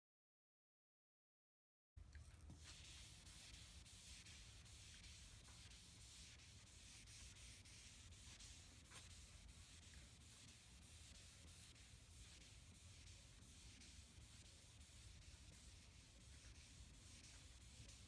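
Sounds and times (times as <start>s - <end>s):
sandpaper rubbing on car paint: 2.6s - 18.0s.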